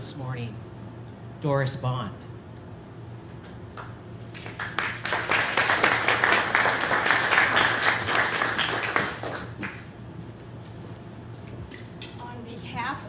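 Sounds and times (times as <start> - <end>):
audience applauding: 3.8 - 9.9.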